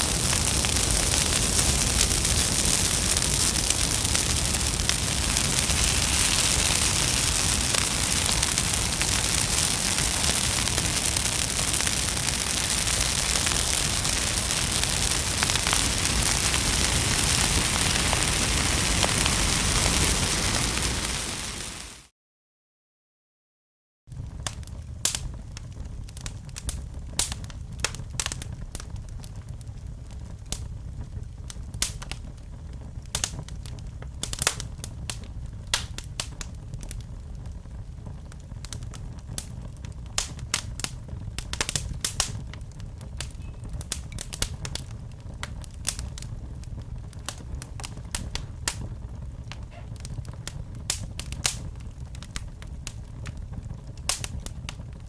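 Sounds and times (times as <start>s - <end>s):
fire crackling and popping: 0.0s - 22.1s, 24.1s - 55.0s
low rumble of flames: 0.0s - 22.1s, 24.1s - 55.0s.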